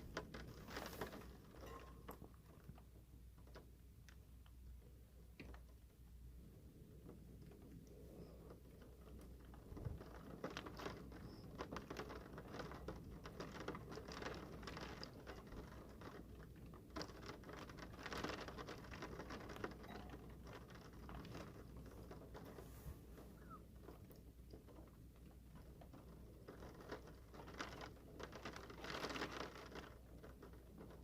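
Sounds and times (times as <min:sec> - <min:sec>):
rain pattering: 0:00.0 - 0:31.0.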